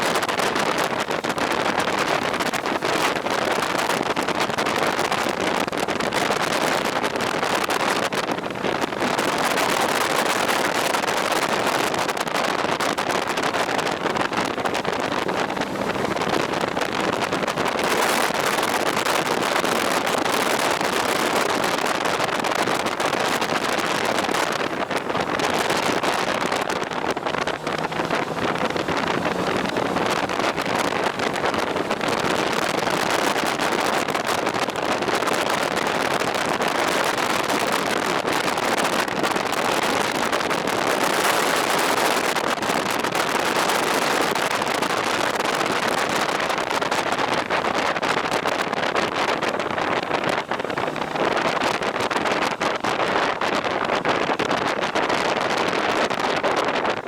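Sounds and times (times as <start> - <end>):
wind rushing over microphone: 0.0 - 57.0
faint motorcycle engine: 19.9 - 37.1.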